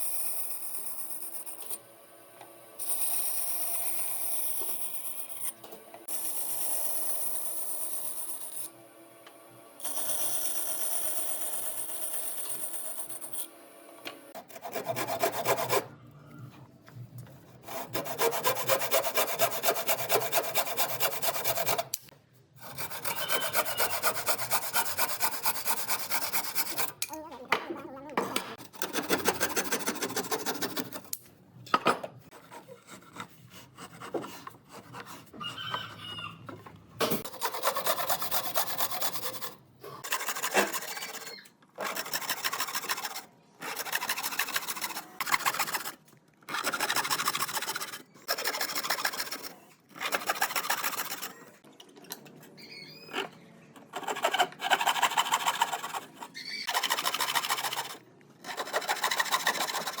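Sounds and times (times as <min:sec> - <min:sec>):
tool rasping against wood: 0:14.4 - 0:15.9, 0:17.5 - 0:22.0, 0:22.6 - 0:27.0, 0:28.8 - 0:31.1, 0:37.2 - 0:51.4, 0:53.9 - 1:00.0.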